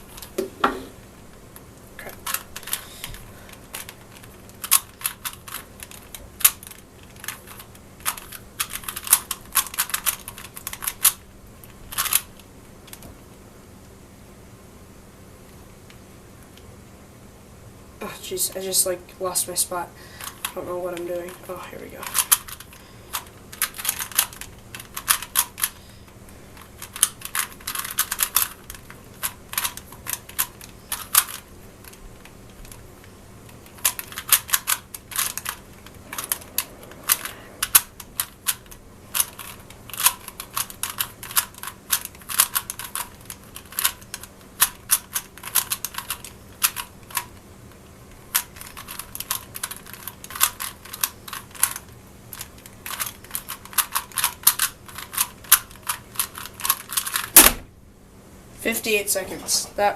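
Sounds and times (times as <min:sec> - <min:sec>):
puzzle cube plastic clicking: 0:02.2 - 0:13.1, 0:22.0 - 0:25.8, 0:26.6 - 0:47.4, 0:48.1 - 0:57.4.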